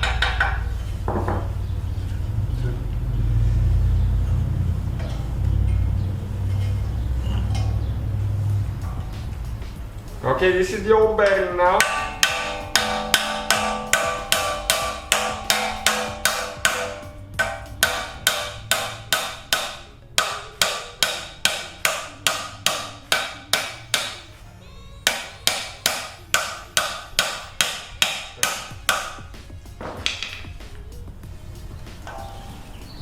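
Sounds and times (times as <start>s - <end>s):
hammer striking metal: 0.0s - 1.5s, 8.8s - 24.4s, 25.0s - 31.0s, 31.9s - 33.0s.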